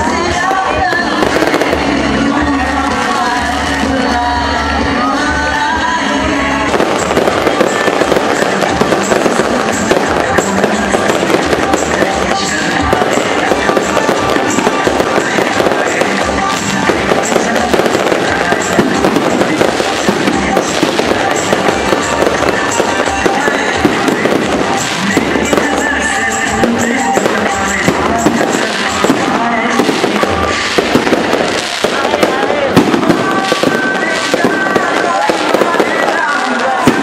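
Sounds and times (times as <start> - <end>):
fireworks crackling and popping: 0.0 - 37.0
music playing: 0.0 - 37.0.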